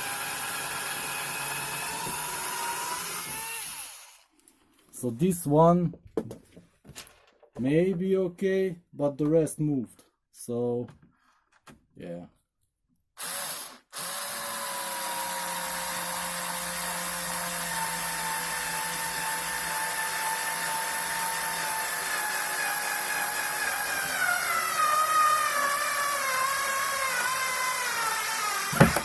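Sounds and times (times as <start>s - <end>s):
electric drill driving screw into wood: 0.0s - 4.3s, 13.2s - 29.0s.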